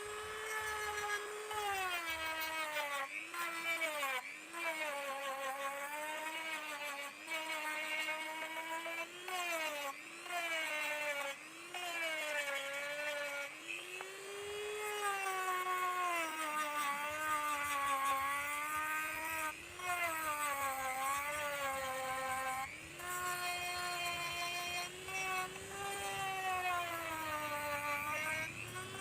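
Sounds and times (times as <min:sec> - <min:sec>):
small electric motor whining: 0:00.0 - 0:29.0.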